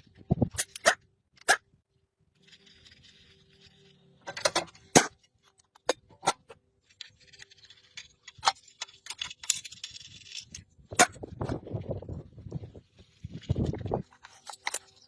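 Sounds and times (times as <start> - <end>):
scraping or rustling: 2.3 - 15.0
clicks and knocks of hard objects: 4.2 - 11.7, 13.4 - 15.0.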